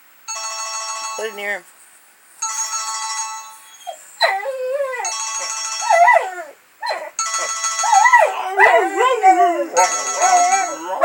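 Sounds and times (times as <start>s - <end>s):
phone ringtone: 0.3s - 1.5s, 2.4s - 3.7s, 5.0s - 6.2s, 7.2s - 8.3s, 9.7s - 11.0s
puppy crying: 3.6s - 11.0s.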